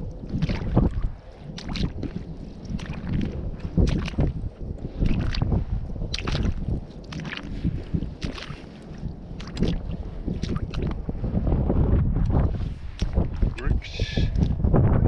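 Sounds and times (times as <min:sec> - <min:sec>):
footsteps squelching through mud: 0:00.0 - 0:11.1, 0:12.9 - 0:13.7
wind rumbling on microphone: 0:00.0 - 0:15.0.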